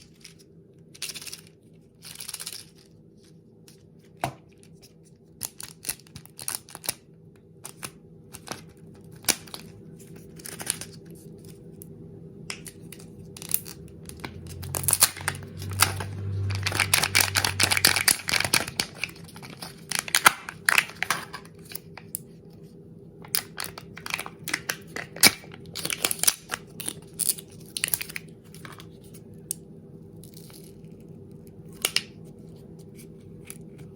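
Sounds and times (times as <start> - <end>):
wrapper tearing and crinkling: 14.5 - 21.1, 23.6 - 28.3.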